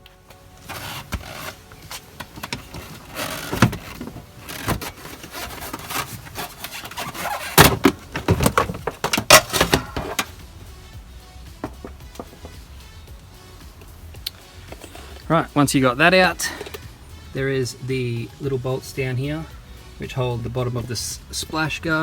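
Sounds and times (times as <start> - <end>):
plastic liner knocks and scrapes: 0.7 - 10.3, 11.6 - 12.6.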